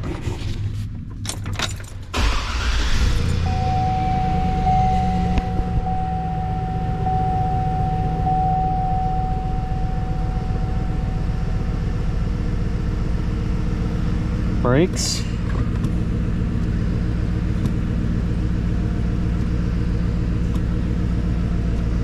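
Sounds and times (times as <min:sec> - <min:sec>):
car engine idling: 0:00.0 - 0:22.0
steady high whine: 0:02.5 - 0:17.2.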